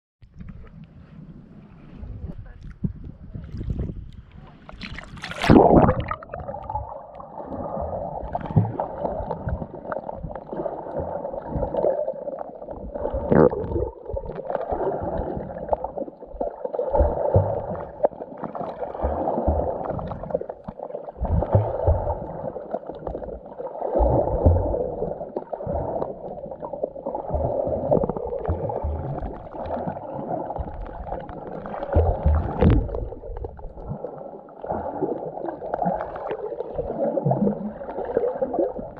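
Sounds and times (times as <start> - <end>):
muffled underwater bubbling: 0.2 - 38.9
loud splash: 4.7 - 6.9.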